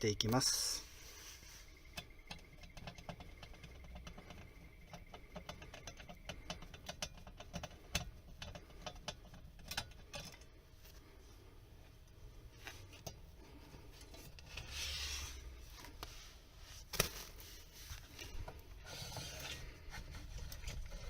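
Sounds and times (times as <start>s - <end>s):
faint clicks and taps of handling: 1.8s - 11.2s.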